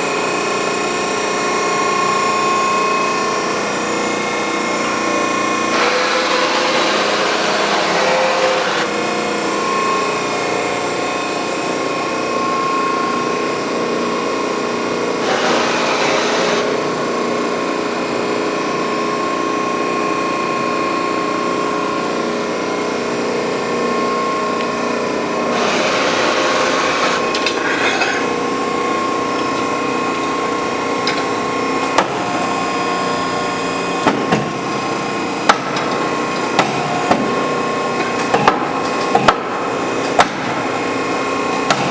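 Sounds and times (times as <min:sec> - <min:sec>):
hydraulic pump humming: 0:00.0 - 0:17.7, 0:21.8 - 0:41.9
hydraulic hissing surges: 0:15.2 - 0:16.7.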